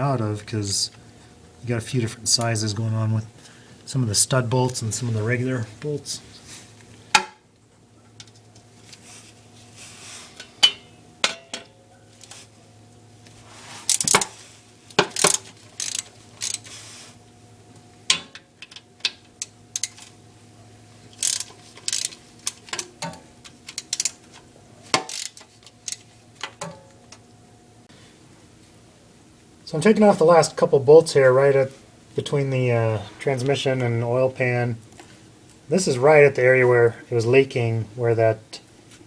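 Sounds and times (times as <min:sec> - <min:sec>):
faint steady hum: 0:00.0 - 0:39.0
ratchet wrench clicking: 0:13.9 - 0:14.3, 0:15.0 - 0:16.7, 0:19.4 - 0:20.1, 0:21.1 - 0:24.2, 0:25.0 - 0:26.0.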